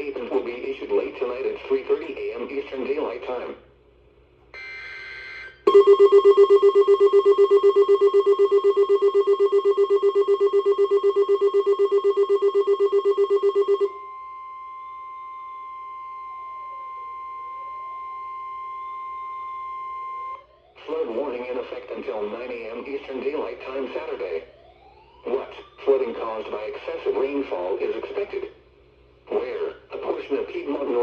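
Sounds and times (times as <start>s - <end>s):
rapid alarm beeping: 5.7s - 13.9s
steady warning alarm tone: 5.7s - 14.0s.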